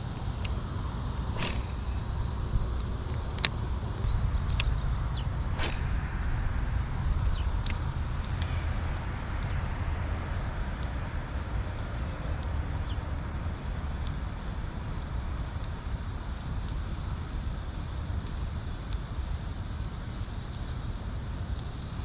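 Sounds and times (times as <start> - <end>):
sharp clicks: 0.0 - 4.8, 5.5 - 6.4
low outdoor rumble: 0.0 - 22.0
faint ticks: 10.3 - 22.0.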